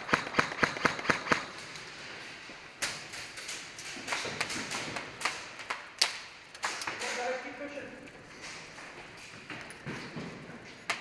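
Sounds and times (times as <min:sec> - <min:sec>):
airsoft guns firing: 0:00.0 - 0:01.7.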